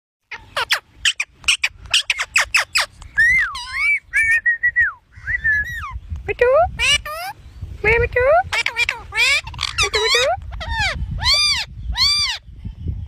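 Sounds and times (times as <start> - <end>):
parrot chirping and whistling: 0.6 - 6.0, 8.5 - 12.4.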